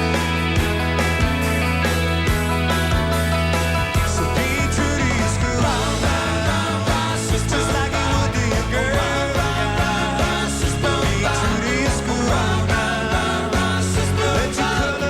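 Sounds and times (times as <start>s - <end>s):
live rock and roll band: 0.0s - 15.0s
person singing: 4.2s - 15.0s.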